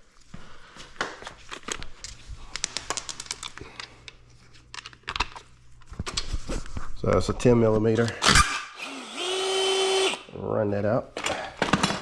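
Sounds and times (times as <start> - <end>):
handling rustles and clicks: 1.0 - 8.2.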